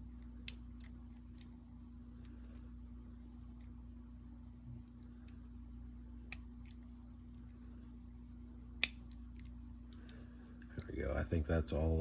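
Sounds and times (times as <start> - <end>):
steady low hum: 0.0 - 12.0
metallic lock picking clicks: 0.1 - 1.6.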